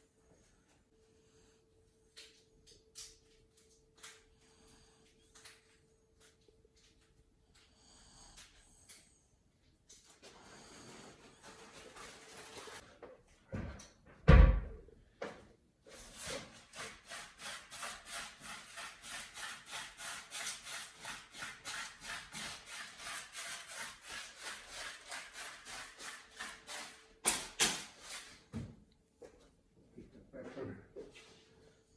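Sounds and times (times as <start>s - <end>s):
rubbing or scraping strokes: 10.2s - 12.8s, 15.9s - 28.4s.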